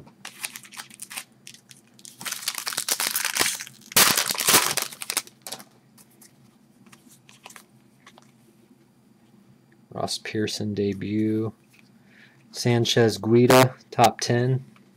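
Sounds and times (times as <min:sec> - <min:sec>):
foil wrapper crinkling: 0:00.2 - 0:05.7.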